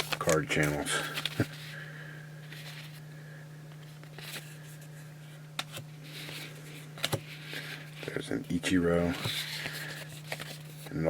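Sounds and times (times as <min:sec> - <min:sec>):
low electrical hum: 0:00.0 - 0:11.0
trading cards sliding: 0:05.6 - 0:10.9.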